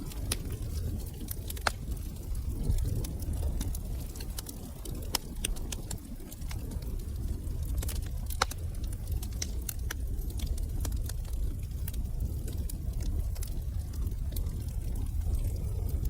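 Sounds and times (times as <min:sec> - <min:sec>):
low rumble of burning: 0:00.0 - 0:16.0
wood fire crackling: 0:00.0 - 0:16.0.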